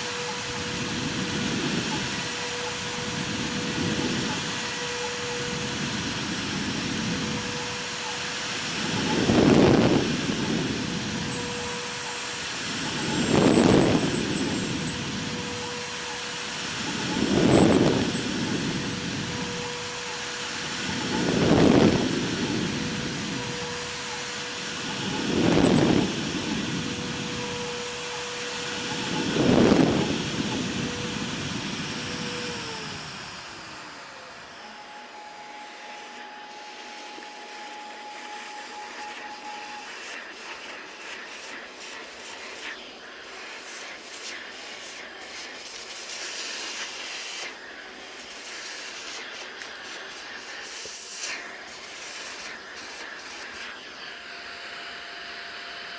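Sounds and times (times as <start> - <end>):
faint steady hum: 0.0 - 42.2
bit cutting wood: 0.0 - 55.9
router spindle whining: 0.0 - 55.9.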